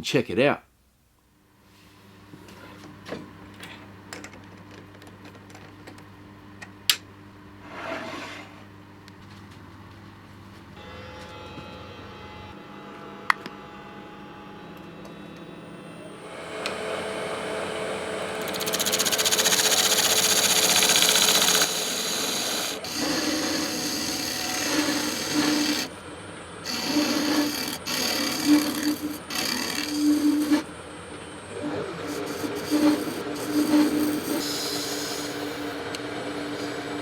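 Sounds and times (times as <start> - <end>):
power tool running: 16.1 - 26.0, 26.6 - 30.8, 31.5 - 37.0.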